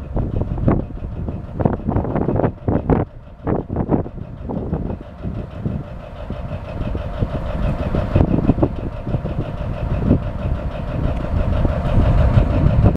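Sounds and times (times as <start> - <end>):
diesel engine running: 0.0 - 12.9.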